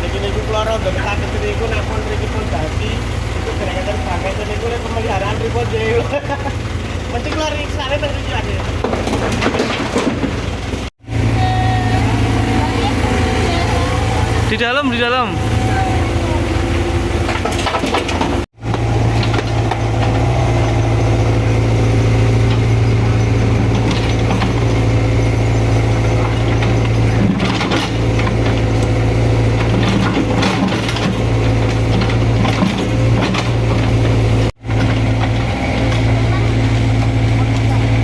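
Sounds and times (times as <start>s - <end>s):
diesel engine running under load: 0.0s - 38.0s
metallic clanks of bucket: 26.0s - 28.9s, 29.5s - 34.2s.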